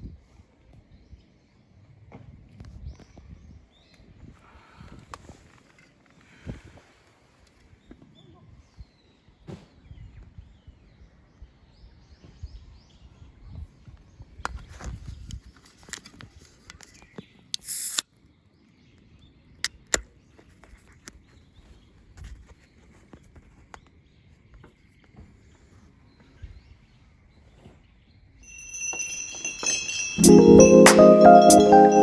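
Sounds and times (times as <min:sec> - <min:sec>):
music with mallet percussion: 0:28.5 - 0:32.0.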